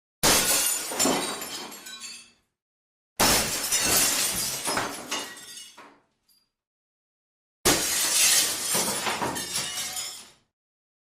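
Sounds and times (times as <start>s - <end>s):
glass shattering: 0.2s - 2.4s, 3.2s - 6.5s, 7.7s - 10.5s
glass pieces clattering and tinkling: 0.5s - 2.4s, 3.6s - 6.5s, 7.9s - 10.4s.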